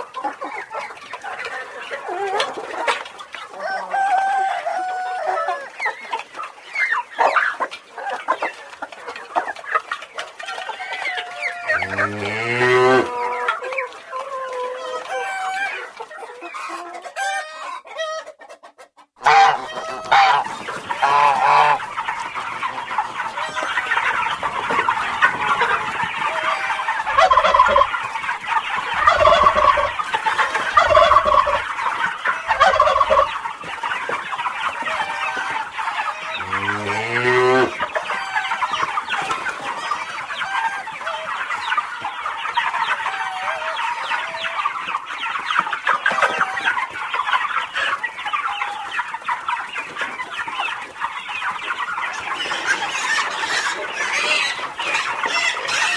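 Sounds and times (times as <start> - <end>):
hens clucking: 0.0 - 55.9
rooster crowing: 3.6 - 5.7, 10.6 - 13.2, 36.4 - 37.7.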